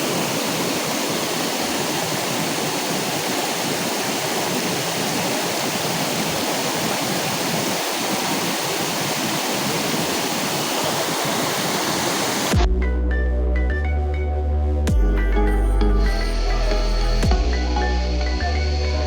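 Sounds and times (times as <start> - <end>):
waterfall rushing: 0.0 - 12.5.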